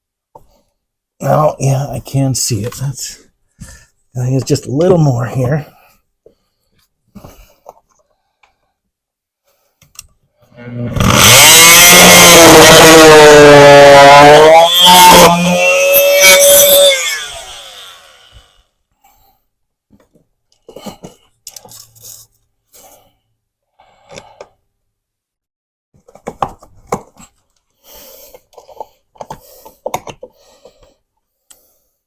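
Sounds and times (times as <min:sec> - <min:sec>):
power tool winding down: 0:10.6 - 0:18.6.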